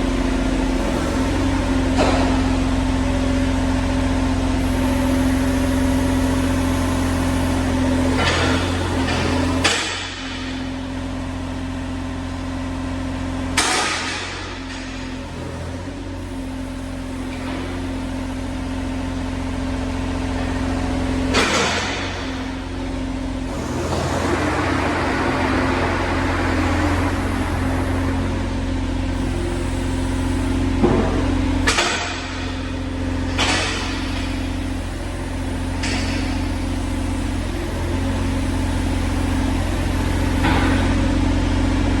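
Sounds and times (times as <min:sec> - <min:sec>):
diesel engine running: 0:00.0 - 0:42.0.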